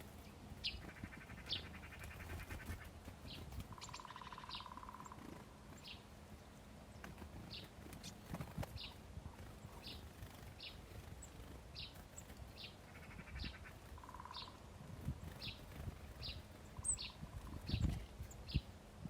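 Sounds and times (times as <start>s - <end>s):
small birds chirping: 0.0s - 19.0s
buzzing bird trill: 0.6s - 6.0s, 9.6s - 18.6s.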